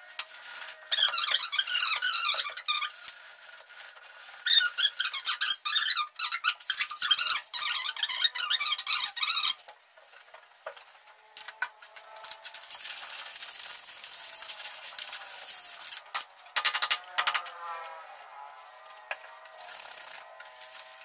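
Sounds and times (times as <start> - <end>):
sandpaper rubbing on metal: 0.2 - 5.9, 12.2 - 16.2, 19.5 - 21.0
high squeaks: 0.6 - 3.2, 4.3 - 9.7.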